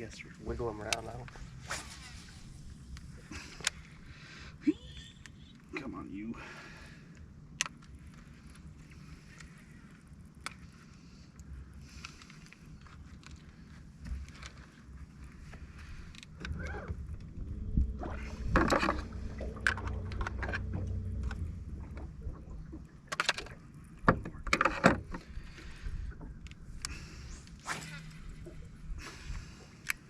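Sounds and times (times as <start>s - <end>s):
low motor hum: 15.3s - 25.4s.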